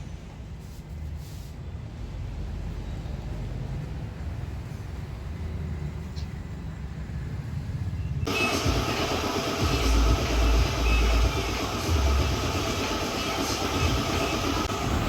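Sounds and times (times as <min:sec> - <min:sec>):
low rumbling: 0:14.6 - 0:15.0.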